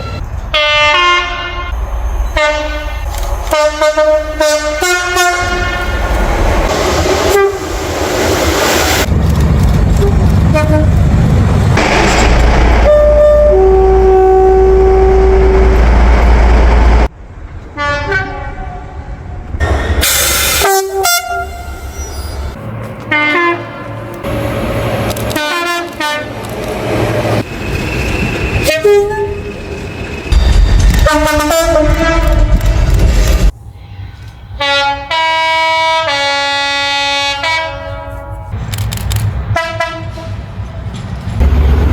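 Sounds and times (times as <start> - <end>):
train horns: 0.0 - 6.2, 7.0 - 7.8, 9.9 - 11.1, 12.8 - 16.0, 17.7 - 19.2, 20.4 - 24.7, 25.3 - 26.4, 28.6 - 29.4, 30.8 - 38.6, 39.5 - 40.6
train passing rumble: 0.0 - 41.9.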